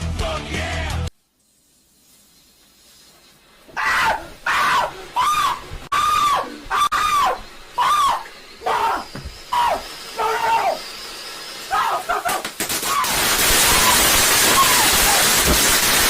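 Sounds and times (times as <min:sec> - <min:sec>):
person screaming: 0:03.8 - 0:10.8, 0:11.7 - 0:15.4.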